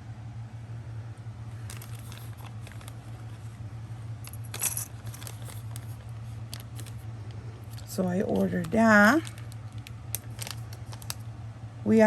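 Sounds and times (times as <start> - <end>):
steady low hum: 0.0 - 12.0
metal jewelry clinking and jingling: 4.2 - 6.0.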